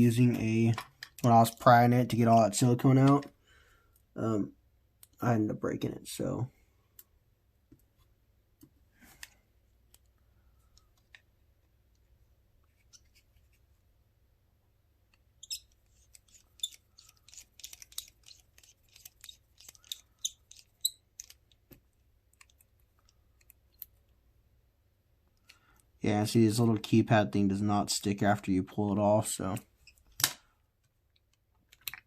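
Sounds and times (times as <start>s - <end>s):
small plastic clicks and crackles: 16.1s - 24.1s, 31.1s - 32.0s.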